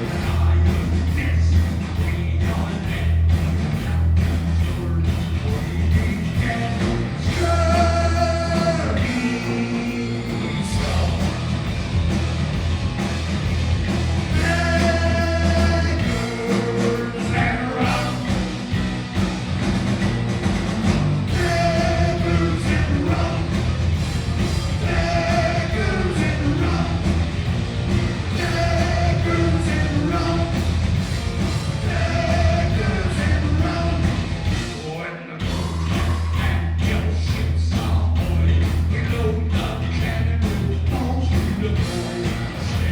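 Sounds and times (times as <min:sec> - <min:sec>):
heavy metal band playing: 0:00.0 - 0:42.9
person singing: 0:05.8 - 0:11.4, 0:14.3 - 0:18.4.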